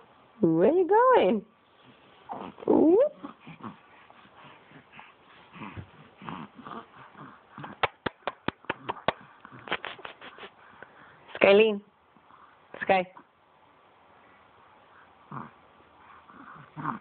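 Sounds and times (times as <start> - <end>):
soft rustling: 1.6 - 7.1.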